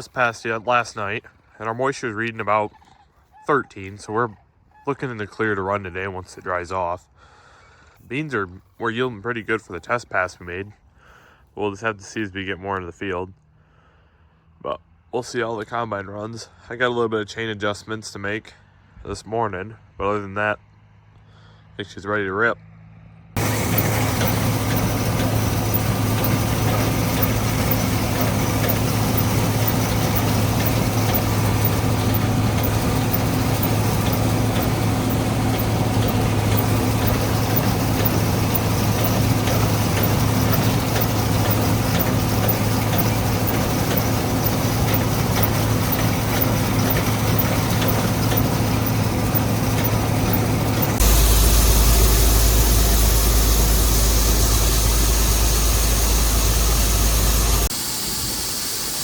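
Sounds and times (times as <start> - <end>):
combine engine humming: 23.4 - 57.7.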